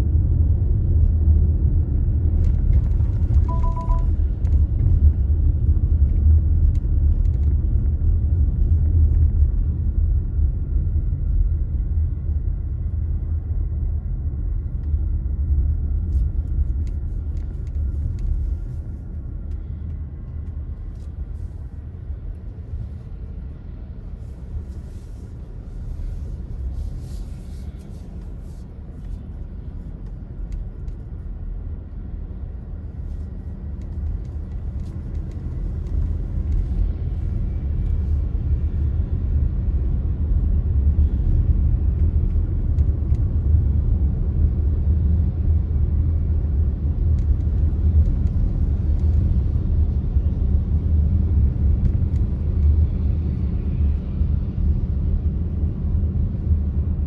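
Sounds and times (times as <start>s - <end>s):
road and engine rumble: 0.0s - 57.0s
two-note electronic beep: 3.5s - 4.1s.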